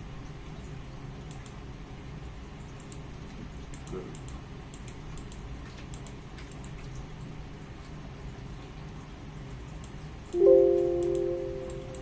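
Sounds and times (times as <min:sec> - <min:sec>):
keyboard typing clicks: 0:10.4 - 0:12.0.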